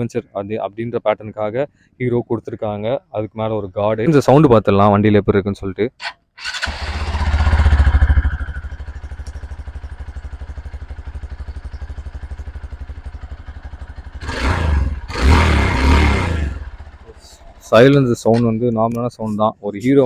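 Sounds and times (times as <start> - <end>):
motorcycle engine idling and revving: 6.4 - 18.6.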